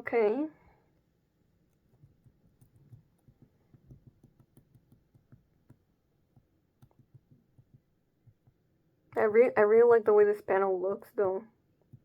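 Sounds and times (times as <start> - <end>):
faint irregular clicks: 0.6 - 9.2.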